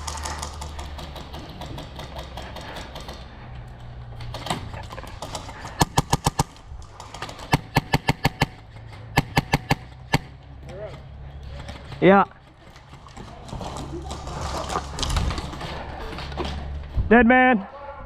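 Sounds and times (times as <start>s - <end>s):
airsoft guns firing rapid bursts: 0.0s - 3.2s, 5.0s - 10.3s.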